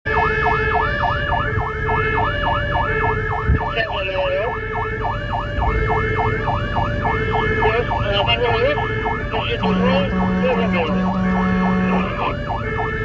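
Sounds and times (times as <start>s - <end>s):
fire engine siren yelping: 0.0s - 13.0s
low engine rumble: 0.1s - 13.0s
pulsing lower tone: 4.5s - 13.0s.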